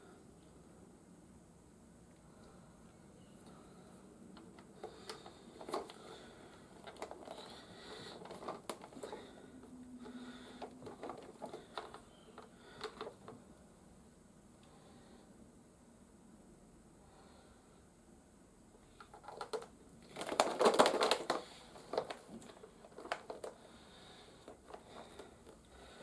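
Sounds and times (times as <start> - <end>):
plastic parts clicking and tapping: 4.4 - 6.0, 6.8 - 7.4, 8.1 - 9.3, 10.0 - 13.4, 19.0 - 23.6.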